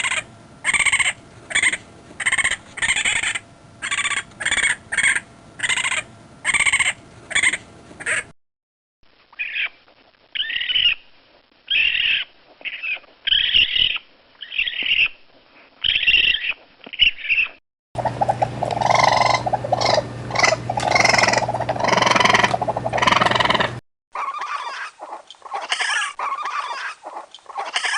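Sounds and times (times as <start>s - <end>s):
low electrical hum: 0.0s - 8.3s, 18.0s - 23.8s
raccoon calls: 0.0s - 8.3s, 9.4s - 11.1s, 11.7s - 15.2s, 15.8s - 27.9s.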